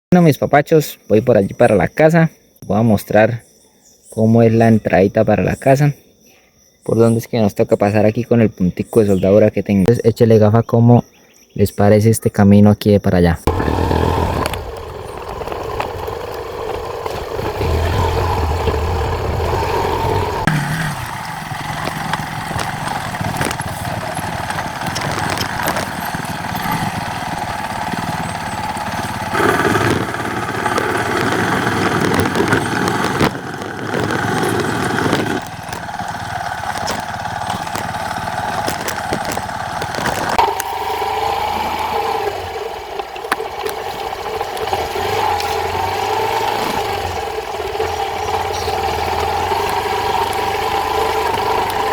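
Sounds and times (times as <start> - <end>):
small motorcycle engine running: 13.5 - 51.9.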